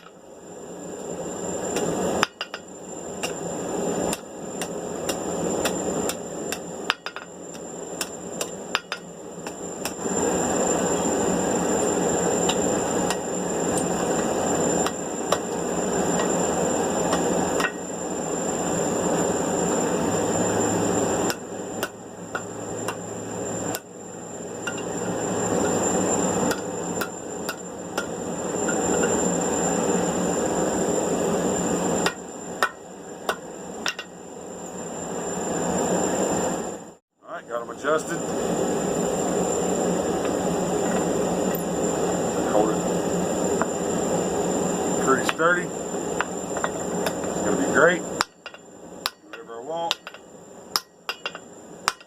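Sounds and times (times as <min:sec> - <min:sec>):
steady rushing noise: 0:00.2 - 0:52.0
hammer tapping steel tongs: 0:48.2 - 0:50.2, 0:50.8 - 0:52.0.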